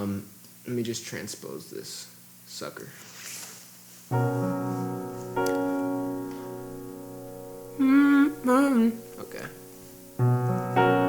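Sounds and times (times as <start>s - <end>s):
piano chords: 4.1s - 11.0s.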